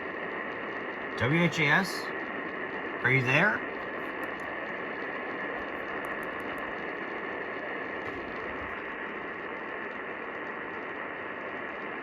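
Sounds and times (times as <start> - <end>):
radio static and hiss: 1.0 - 12.0
faint crackles: 3.6 - 12.0.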